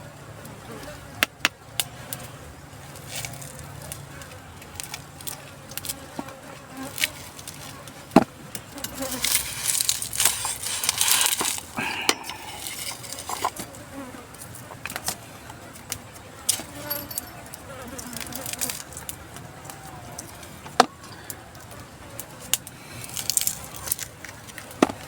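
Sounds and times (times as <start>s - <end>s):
clicks and rustling from handling: 7.0s - 13.8s
fly buzzing: 8.7s - 14.5s.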